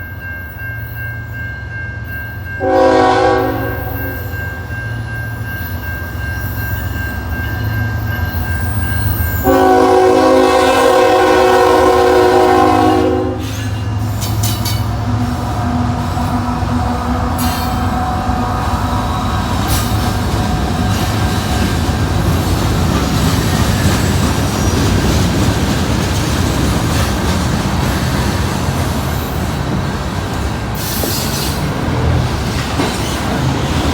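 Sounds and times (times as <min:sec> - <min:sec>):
train horn blasts: 0:02.6 - 0:04.3, 0:09.4 - 0:13.8
locomotive engine rumble: 0:09.4 - 0:30.8
wheels clattering on rail joints: 0:13.4 - 0:33.9.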